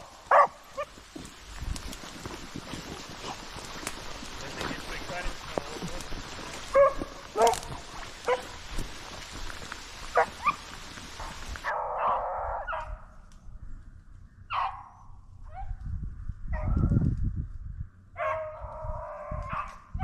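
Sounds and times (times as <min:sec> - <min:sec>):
hunting dogs barking: 0:00.0 - 0:01.0, 0:04.4 - 0:08.7, 0:10.0 - 0:13.1, 0:14.5 - 0:15.7, 0:18.2 - 0:19.9
dogs baying: 0:06.6 - 0:08.6.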